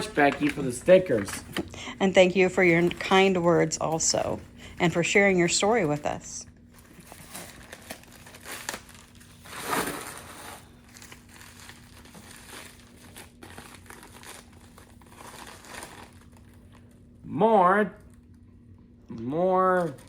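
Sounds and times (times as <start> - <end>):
packaging crinkling and rustling: 0.0 - 1.7, 5.2 - 17.0.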